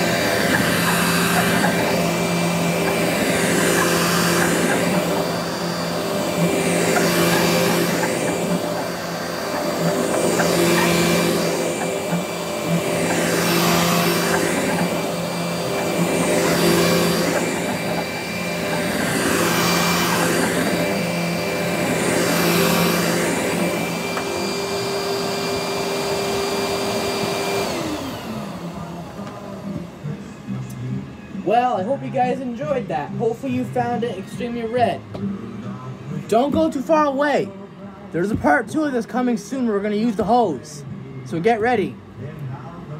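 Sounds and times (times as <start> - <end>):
vacuum motor winding down: 0.0 - 31.1
vacuum cleaner running: 0.0 - 42.9.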